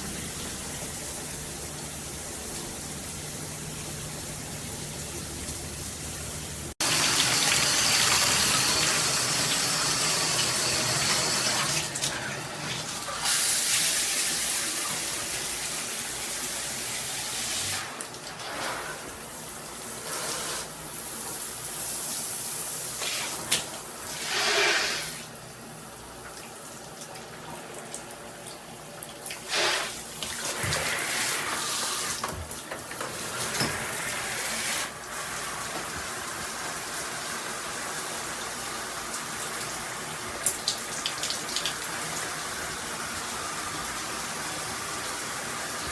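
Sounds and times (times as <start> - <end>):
shower head spraying water: 6.8 - 12.1.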